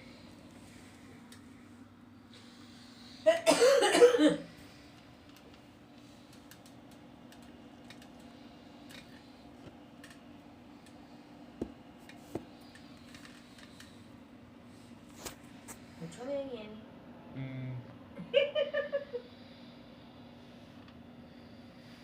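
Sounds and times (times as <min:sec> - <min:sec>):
low steady hum: 0:00.0 - 0:22.0
short vocal sound: 0:17.4 - 0:17.9.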